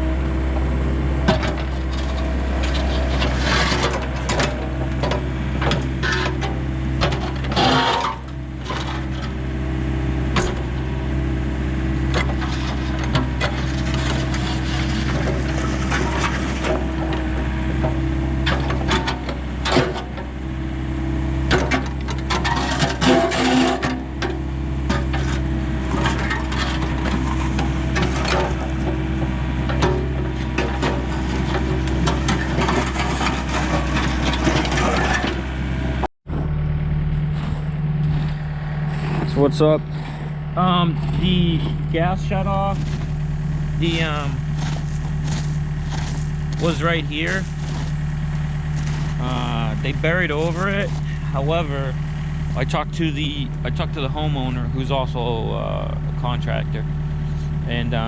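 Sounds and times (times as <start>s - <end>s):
excavator engine running: 0.0s - 58.0s
concrete rubble scraping and cracking: 1.3s - 9.4s, 12.0s - 20.3s, 21.5s - 35.4s, 37.1s - 52.2s.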